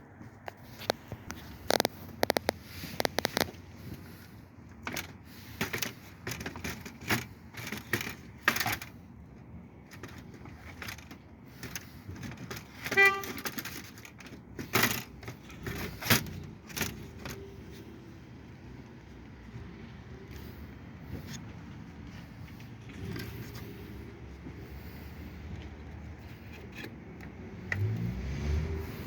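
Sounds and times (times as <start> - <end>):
short horn toot: 12.9 - 13.4.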